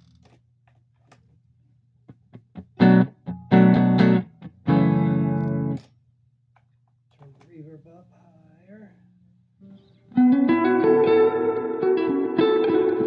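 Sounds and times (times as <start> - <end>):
electric guitar chords: 2.5 - 5.8, 9.6 - 13.0
faint picked guitar ticks: 5.3 - 5.9.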